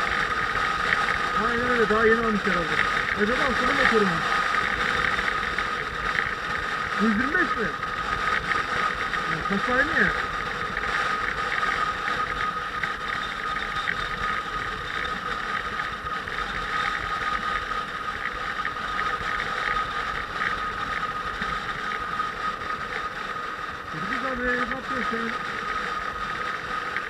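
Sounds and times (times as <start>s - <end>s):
motorcycle running: 0.0s - 27.0s.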